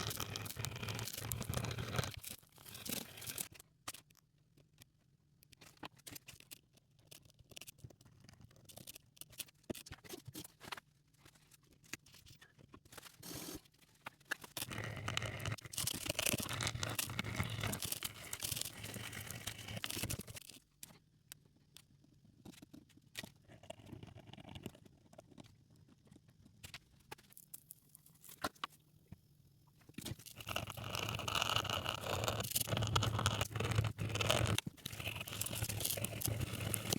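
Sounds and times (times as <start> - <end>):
coin being scraped and scrubbed: 0.0 - 3.5, 14.7 - 20.2, 30.2 - 36.9.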